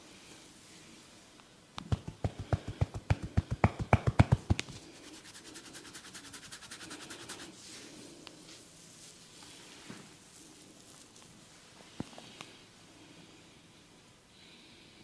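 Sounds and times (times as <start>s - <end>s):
hands drumming on a head: 1.8s - 4.8s.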